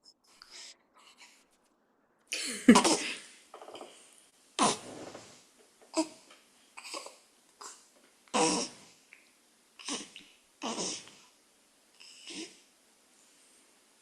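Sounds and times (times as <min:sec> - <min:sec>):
person breathing: 0:00.2 - 0:01.5.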